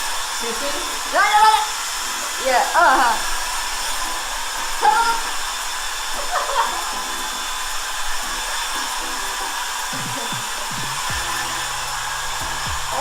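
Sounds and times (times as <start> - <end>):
hair dryer blowing: 0.0 - 13.0.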